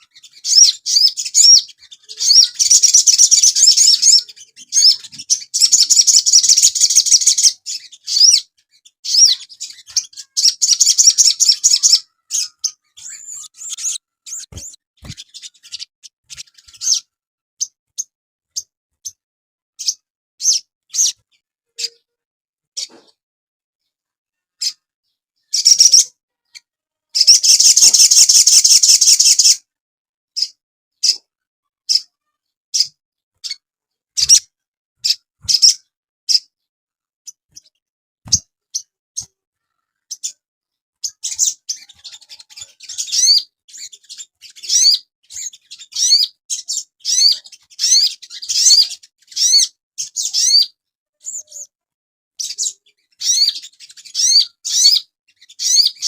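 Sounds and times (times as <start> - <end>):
buzzy bird trill: 0.0 - 17.7, 25.5 - 26.1, 27.2 - 29.6, 41.0 - 51.7, 52.4 - 56.0
sharp bird chirps: 0.0 - 19.2, 25.4 - 26.1, 27.2 - 29.6, 34.2 - 36.5, 41.0 - 51.7, 52.4 - 56.0.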